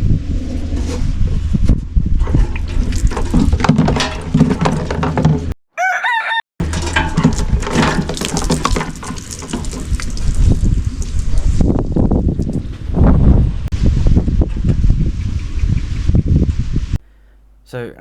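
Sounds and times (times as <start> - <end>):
rooster crowing: 5.7 - 6.5.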